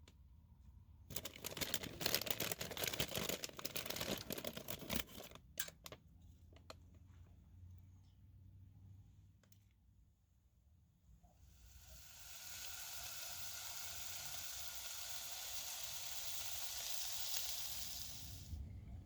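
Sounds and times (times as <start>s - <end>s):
food sizzling in a hot pan: 11.6s - 18.5s.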